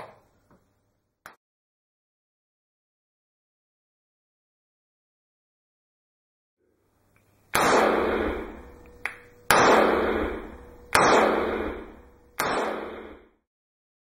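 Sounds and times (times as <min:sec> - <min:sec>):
revolver shots with echo: 0:07.5 - 0:13.3.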